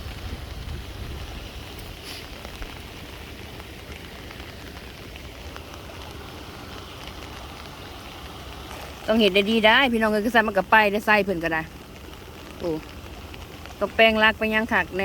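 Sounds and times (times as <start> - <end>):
steady rain falling: 0.0 - 15.0
wind rumbling on microphone: 0.0 - 15.0.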